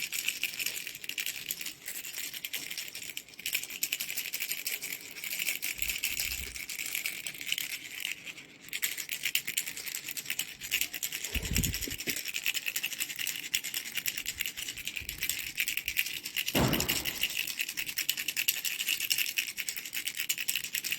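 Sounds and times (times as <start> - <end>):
baby rattle clattering: 8.9 - 20.9
dull thumps of rattle handling: 14.4 - 17.6.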